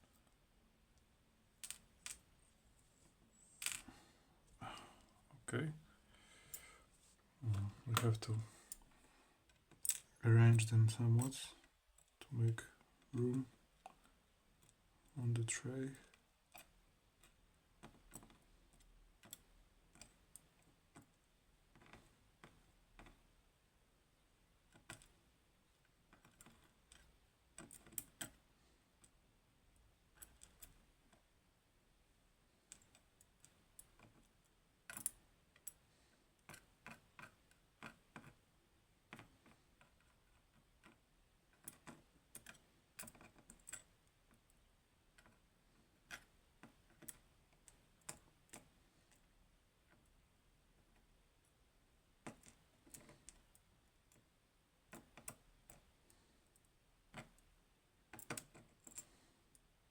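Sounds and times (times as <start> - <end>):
small lock parts clicking on tray: 34.9 - 35.8, 40.8 - 44.4, 58.1 - 59.1.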